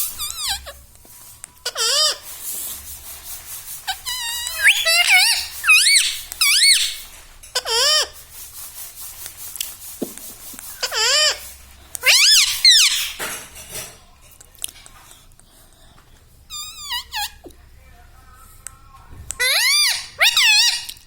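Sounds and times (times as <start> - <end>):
parrot squeaky calls: 0.0 - 0.8, 1.6 - 2.5, 3.8 - 8.2, 10.7 - 13.3, 16.5 - 17.5, 19.4 - 21.0.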